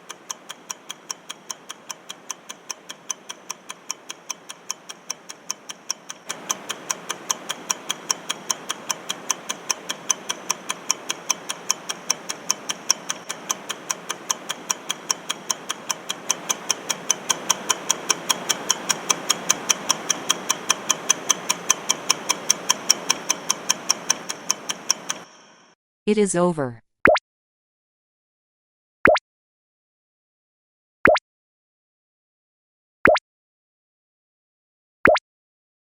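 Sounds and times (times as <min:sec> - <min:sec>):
clock ticking rapidly: 0:00.0 - 0:25.3
steady hiss: 0:00.0 - 0:25.6.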